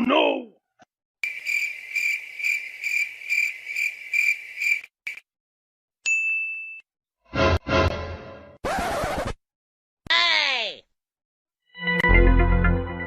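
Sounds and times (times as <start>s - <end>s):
cricket chirping: 1.2s - 5.2s
person speaking: 10.1s - 10.9s.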